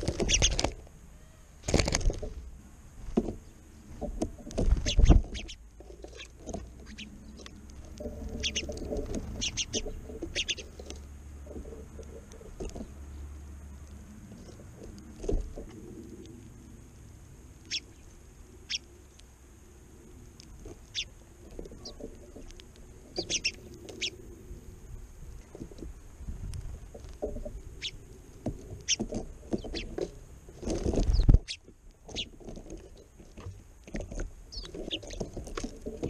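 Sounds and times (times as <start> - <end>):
sparrows chirping: 0.1 - 0.7, 4.7 - 7.6, 8.3 - 10.8, 17.6 - 18.9, 20.8 - 22.1, 23.1 - 24.2, 27.8 - 28.0, 28.8 - 29.9, 31.0 - 32.3, 34.5 - 35.2.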